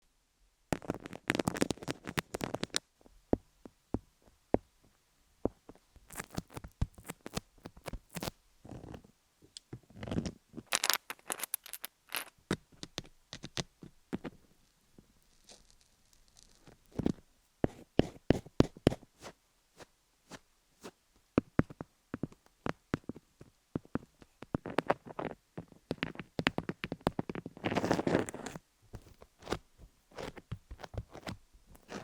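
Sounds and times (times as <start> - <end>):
scratching and rubbing on microphone: 0.8 - 2.8, 6.0 - 9.1, 24.5 - 32.0.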